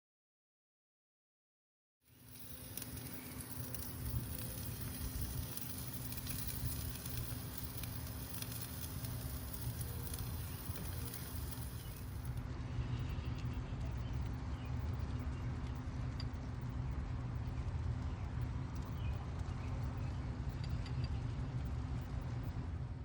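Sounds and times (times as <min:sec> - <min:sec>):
meat sizzling on a grill: 0:02.1 - 0:12.4.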